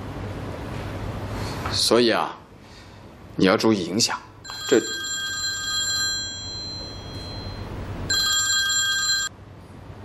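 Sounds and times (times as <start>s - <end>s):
telephone ringing: 4.4s - 9.3s.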